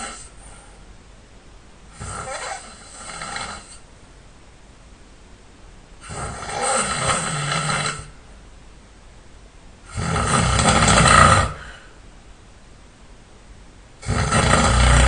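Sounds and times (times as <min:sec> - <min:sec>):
person snoring loudly: 0:00.0 - 0:00.3, 0:02.0 - 0:03.8, 0:06.0 - 0:08.2, 0:09.9 - 0:11.9, 0:14.0 - 0:15.0
quiet breathing: 0:00.0 - 0:01.0, 0:01.8 - 0:03.9, 0:09.8 - 0:12.2.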